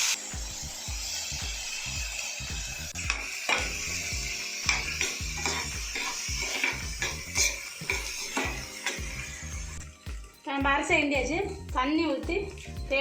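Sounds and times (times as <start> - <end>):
rice sizzling in hot ghee: 0.0 - 13.0
spoon scraping a pan: 3.0 - 9.9.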